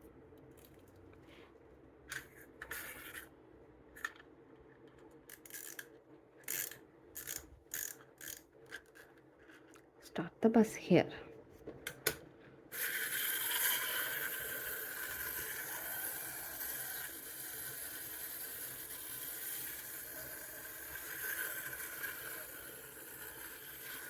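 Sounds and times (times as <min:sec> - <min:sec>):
clockwork toy motor whirring: 0:02.1 - 0:03.3, 0:05.3 - 0:09.6, 0:12.7 - 0:24.0.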